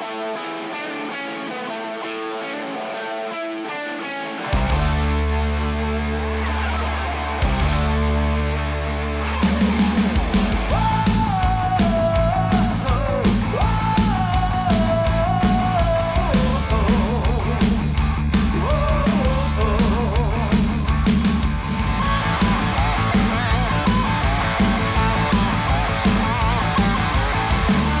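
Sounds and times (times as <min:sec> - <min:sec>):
lead guitar melody: 0:00.0 - 0:09.7
bass guitar: 0:04.5 - 0:28.0
drum beat: 0:08.9 - 0:28.0.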